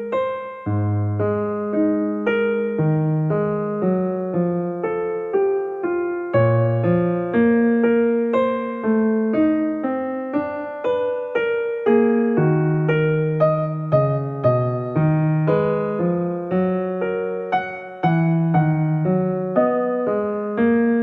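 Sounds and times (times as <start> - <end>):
calm piano melody: 0.0 - 21.0.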